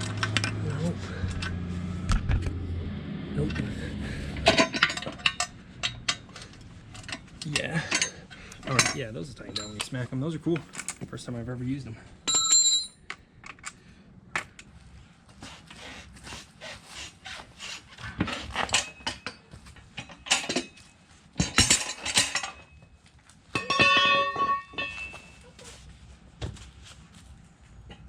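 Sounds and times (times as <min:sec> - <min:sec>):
steel tools clanking and scraping: 0:00.0 - 0:01.6, 0:03.4 - 0:11.0, 0:17.3 - 0:22.8, 0:23.5 - 0:25.8
ringing metal strikes: 0:23.6 - 0:25.4.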